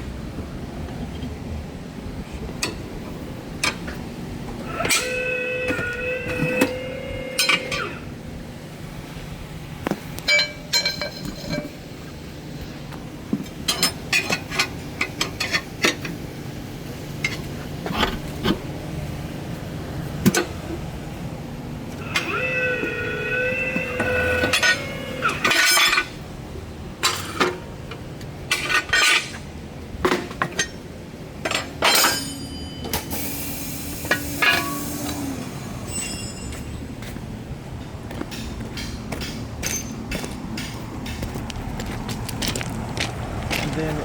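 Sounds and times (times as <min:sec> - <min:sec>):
metal tools clinking on wheel rim: 0:10.2 - 0:11.9, 0:12.6 - 0:16.2, 0:17.2 - 0:18.3, 0:24.0 - 0:26.2, 0:30.1 - 0:33.4, 0:35.8 - 0:37.3, 0:38.2 - 0:42.7.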